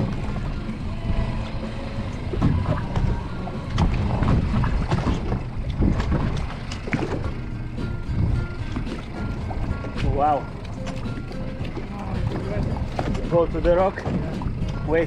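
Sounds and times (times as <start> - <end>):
sea noise: 0.0 - 15.0
wind on microphone: 2.2 - 7.3.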